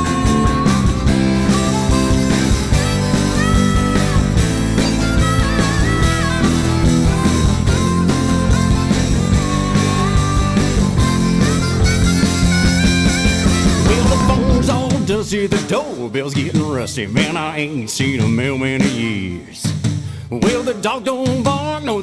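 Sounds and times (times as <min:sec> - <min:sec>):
electric guitar lead: 0:00.0 - 0:15.4
bass guitar: 0:00.0 - 0:19.0
drum beat: 0:00.0 - 0:22.0.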